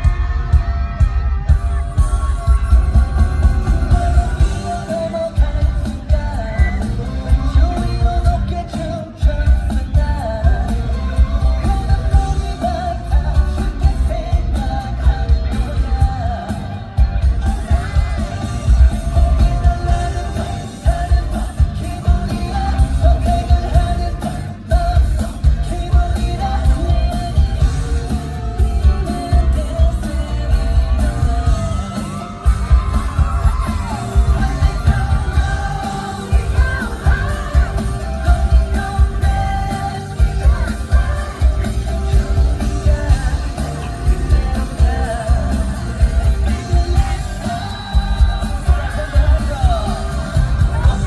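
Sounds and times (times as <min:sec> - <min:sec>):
fans yelling and cheering: 0:00.0 - 0:51.0
heavy pulsing bass: 0:00.0 - 0:51.0
lead vocal singing: 0:00.0 - 0:51.0
pop-rock song over sound system: 0:00.0 - 0:51.0.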